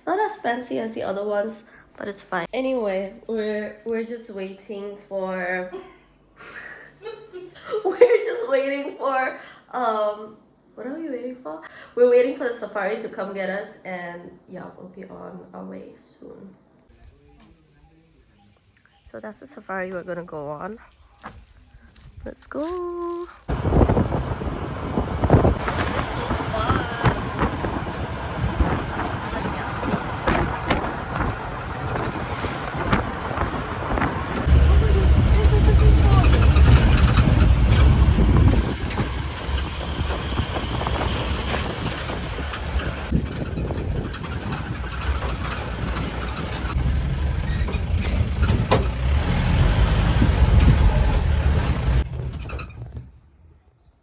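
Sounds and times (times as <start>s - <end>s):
knocks and clicks: 23.5s - 49.0s
wind buffeting microphone: 23.5s - 52.4s
vehicle engine and road noise: 23.5s - 53.9s.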